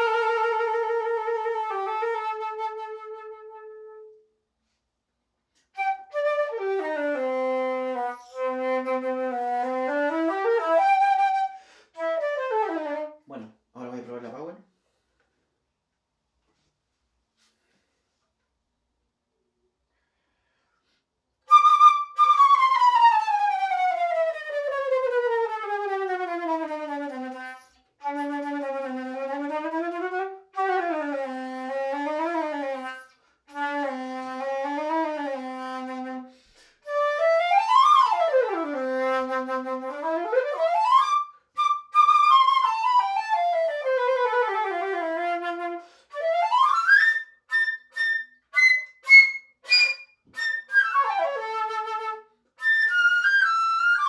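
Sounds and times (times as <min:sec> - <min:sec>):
solo flute playing: 0:00.0 - 0:04.8, 0:05.6 - 0:13.3, 0:21.4 - 0:54.0.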